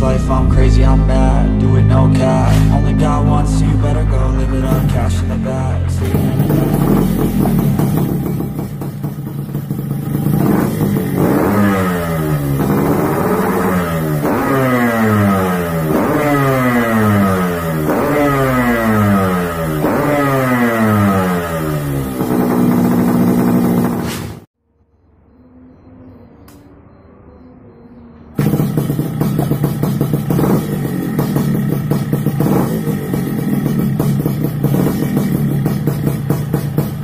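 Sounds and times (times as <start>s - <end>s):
motorcycle engine revving: 4.6s - 24.6s, 28.3s - 37.0s.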